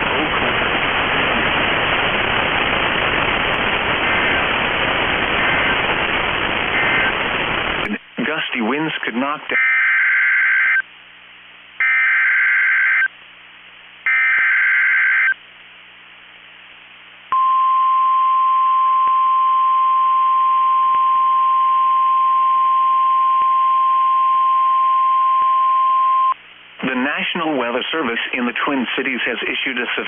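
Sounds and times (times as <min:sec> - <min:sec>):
steady alarm tone: 0:14.1 - 0:15.4.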